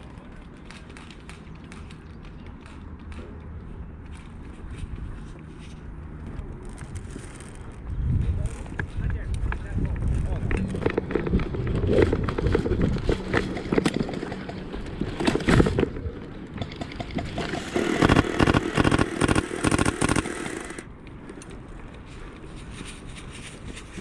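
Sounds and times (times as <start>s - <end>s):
airsoft guns firing sharp pops: 16.6s - 20.7s.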